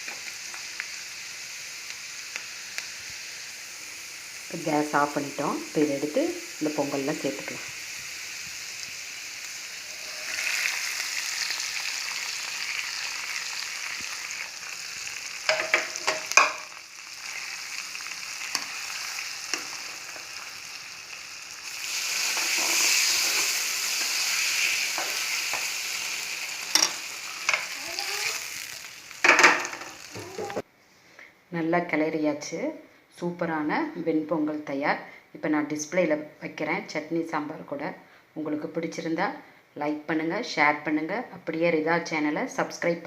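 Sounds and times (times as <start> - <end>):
hot oil sizzling: 0.0 - 30.6.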